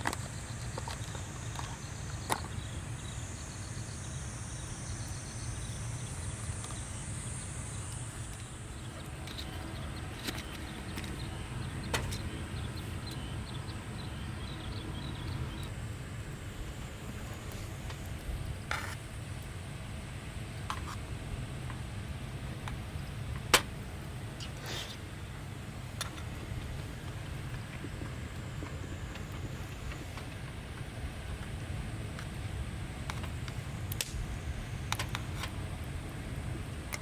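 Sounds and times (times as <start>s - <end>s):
insect chirping: 0.0s - 19.4s, 24.2s - 32.3s.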